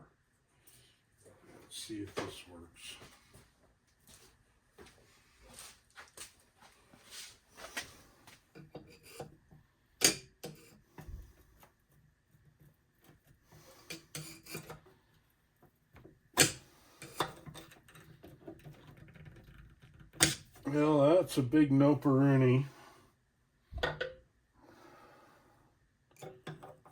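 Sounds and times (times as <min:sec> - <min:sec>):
hand tool scraping metal: 0:13.6 - 0:14.8.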